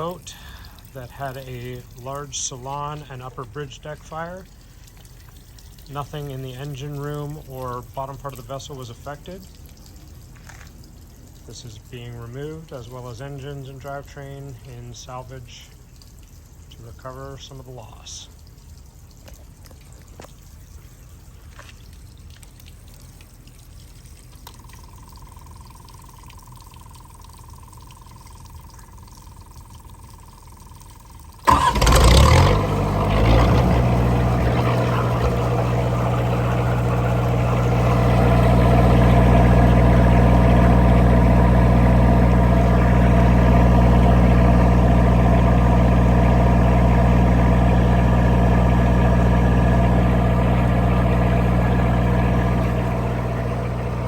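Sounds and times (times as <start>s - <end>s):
diesel generator cranking and running: 0.0s - 15.9s, 24.6s - 54.0s
thin steady tone: 22.9s - 31.4s.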